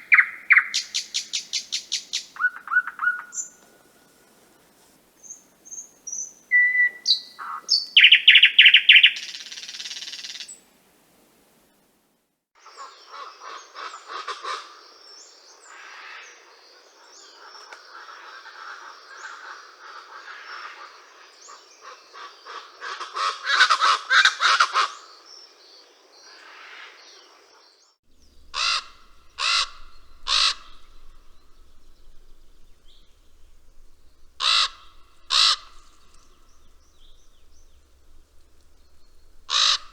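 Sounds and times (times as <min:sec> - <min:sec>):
small bird chirps and trill: 0:05.2 - 0:10.6, 0:27.7 - 0:39.9
loud harsh bird calls: 0:06.5 - 0:10.4, 0:28.2 - 0:39.9
chattering bird chorus: 0:28.2 - 0:39.9.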